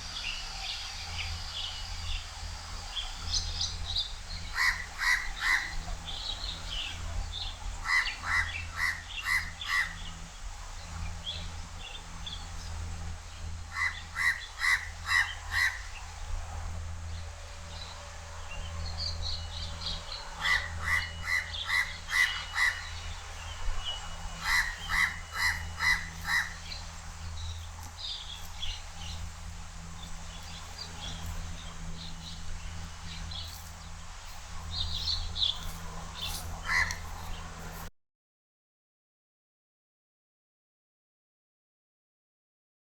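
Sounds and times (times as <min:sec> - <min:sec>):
birds chirping: 0:00.0 - 0:37.9
crow cawing: 0:04.5 - 0:05.8, 0:07.8 - 0:10.0, 0:13.7 - 0:15.9, 0:20.4 - 0:23.2, 0:24.2 - 0:27.0, 0:35.6 - 0:37.4.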